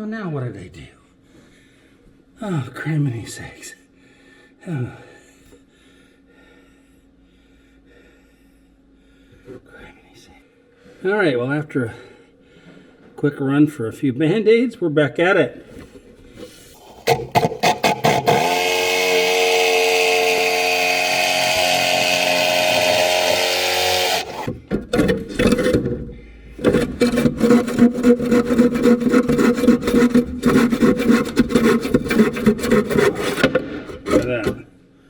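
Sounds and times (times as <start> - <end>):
saw cutting wood: 16.8 - 25.9, 26.6 - 34.6.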